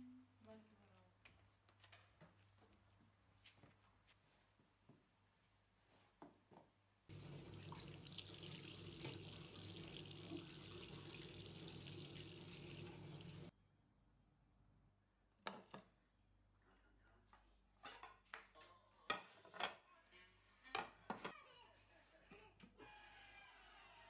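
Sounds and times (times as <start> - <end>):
tap water running into sink: 7.1 - 13.5.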